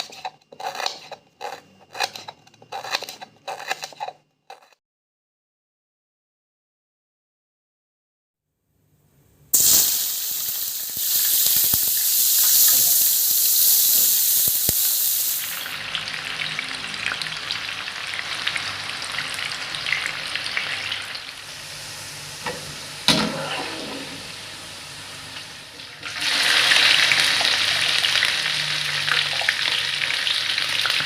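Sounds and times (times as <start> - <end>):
food sizzling in hot oil: 9.5 - 31.0.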